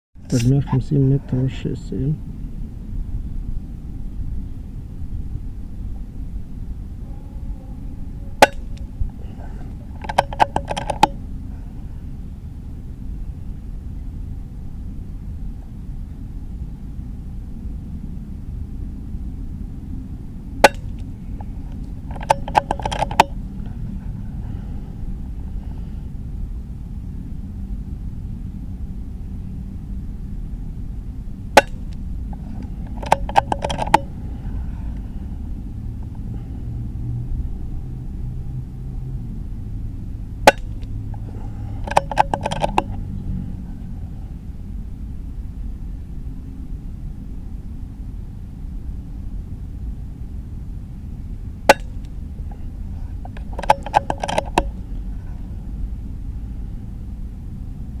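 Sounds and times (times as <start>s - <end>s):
wind rumble on microphone: 0.2s - 58.0s
metallic clicks of rifle action: 32.9s - 34.0s, 41.8s - 43.0s, 53.3s - 54.7s.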